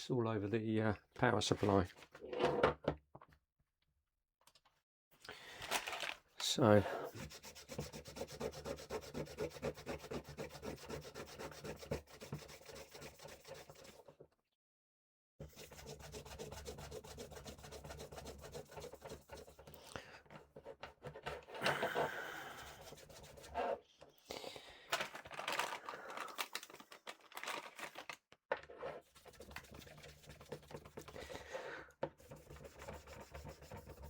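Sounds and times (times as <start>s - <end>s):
wipe scrubbing plastic: 29.0s - 31.3s, 32.1s - 34.0s.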